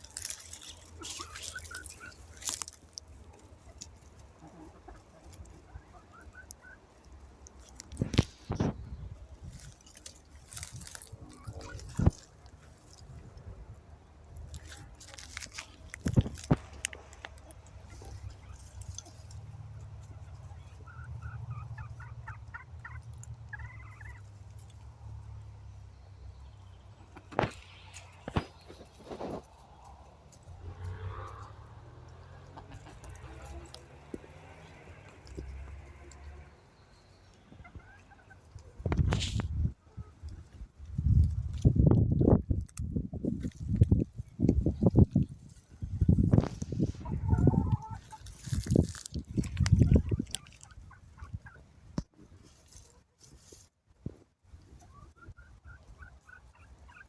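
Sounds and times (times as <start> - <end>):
chicken calling: 0.0 - 7.3, 10.5 - 12.8, 16.5 - 24.4, 32.2 - 35.8, 46.8 - 51.6
chickens clucking: 0.0 - 42.0, 43.5 - 57.0.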